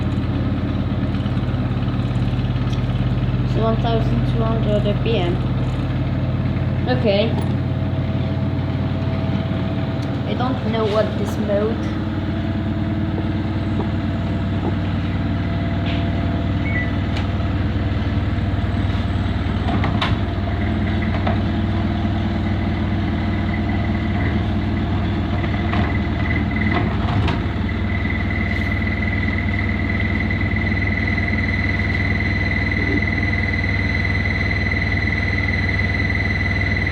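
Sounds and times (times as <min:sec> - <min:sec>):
high steady whine: 0:00.0 - 0:24.4, 0:25.0 - 0:36.9
washing machine motor hum: 0:00.0 - 0:36.9
clicks: 0:07.3 - 0:07.7.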